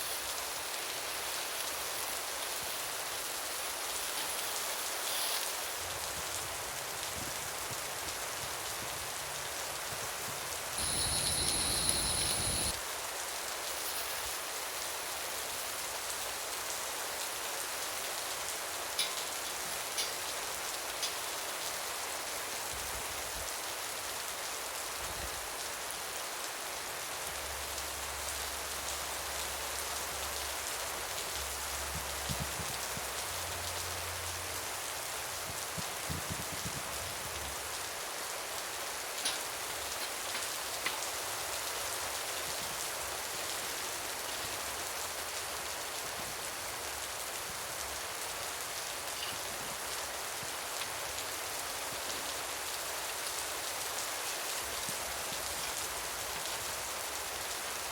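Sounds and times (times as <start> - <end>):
faint drip-like ticks: 0.0 - 9.1, 9.8 - 12.8, 13.6 - 23.5, 39.0 - 45.5, 48.6 - 57.5
steady rain falling: 0.0 - 57.9.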